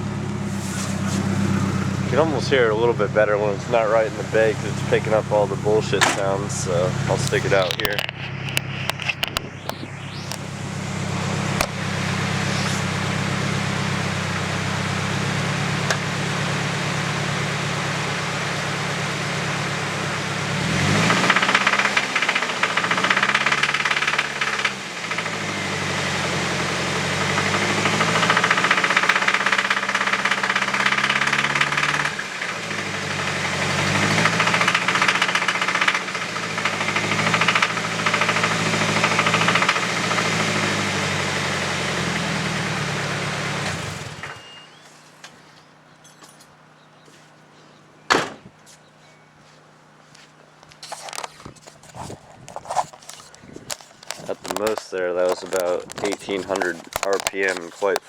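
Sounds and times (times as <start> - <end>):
car engine revving: 0.0 - 44.8, 50.5 - 58.0
car engine idling with a knock: 4.1 - 49.2.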